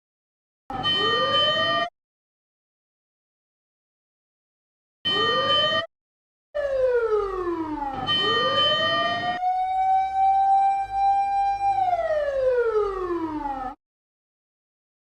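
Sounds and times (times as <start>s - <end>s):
siren wailing: 0.7s - 1.9s, 5.1s - 5.9s, 6.6s - 13.8s.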